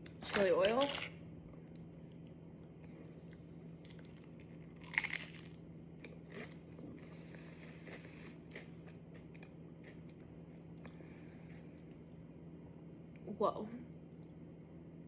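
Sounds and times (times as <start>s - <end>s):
crunching of fried food: 0.0s - 12.2s
person chewing: 1.7s - 12.0s.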